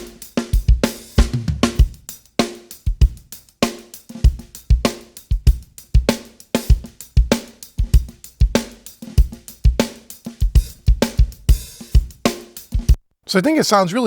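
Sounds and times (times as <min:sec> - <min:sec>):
drum kit groove: 0:00.0 - 0:13.0.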